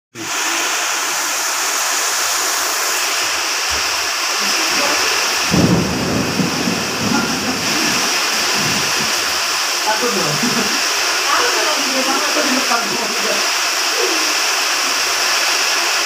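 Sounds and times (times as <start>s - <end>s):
heavy rain pouring: 0.2s - 16.0s
thunder rumbling: 4.5s - 9.7s.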